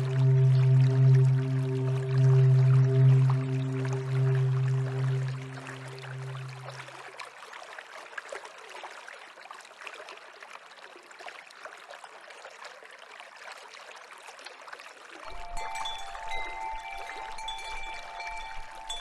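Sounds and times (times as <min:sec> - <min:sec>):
low music tones: 0:00.0 - 0:06.9, 0:15.3 - 0:19.0
stream trickling and splashing: 0:00.0 - 0:19.0.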